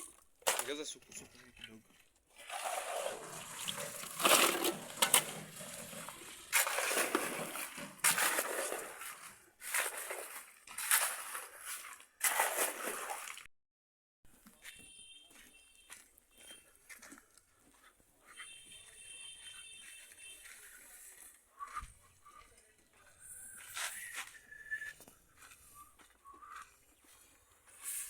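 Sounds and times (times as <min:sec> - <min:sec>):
shovels scraping wet concrete: 0:00.5 - 0:13.4.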